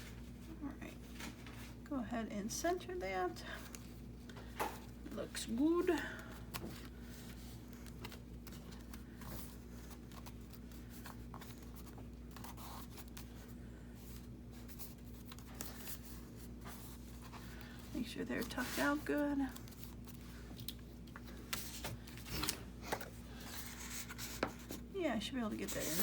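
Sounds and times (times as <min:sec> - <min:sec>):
paper rustling and tapping: 0:19.5 - 0:24.9.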